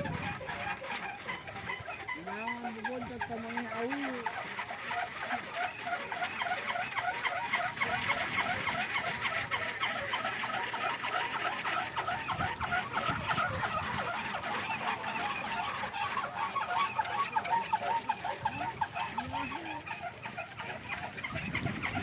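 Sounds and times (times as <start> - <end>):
wind rumble on microphone: 0.0 - 2.2, 12.0 - 15.6, 20.9 - 22.0
wind propeller squeaking whir: 0.0 - 22.0.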